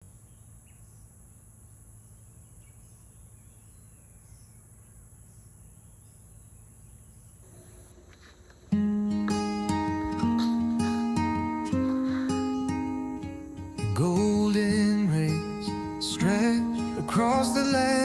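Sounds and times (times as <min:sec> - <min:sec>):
crickets trilling: 0:00.0 - 0:18.0
faint bird chirps: 0:02.0 - 0:18.0
strummed acoustic guitar music: 0:07.6 - 0:18.0.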